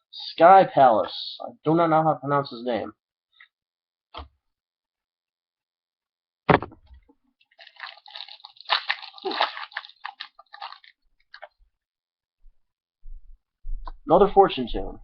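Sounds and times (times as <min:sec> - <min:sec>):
sharp thump: 0:06.5 - 0:07.0
foil wrapper crinkling and tearing: 0:07.4 - 0:11.5.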